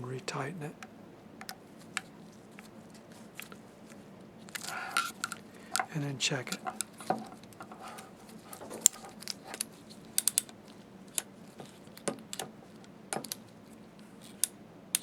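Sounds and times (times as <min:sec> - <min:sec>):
metal mechanism clicks: 0:08.7 - 0:11.3, 0:13.2 - 0:13.5.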